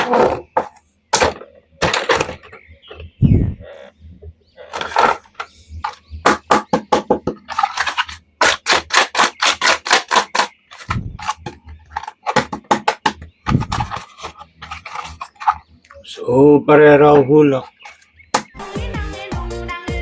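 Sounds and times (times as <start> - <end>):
plastic toys clicking and tapping: 0.0 - 3.1, 4.7 - 16.0, 17.6 - 18.4.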